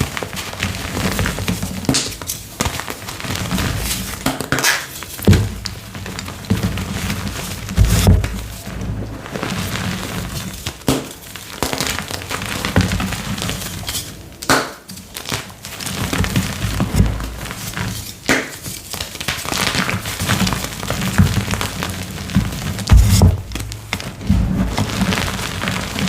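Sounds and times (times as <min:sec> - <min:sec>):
chalk pieces cracking: 0:01.9 - 0:05.3.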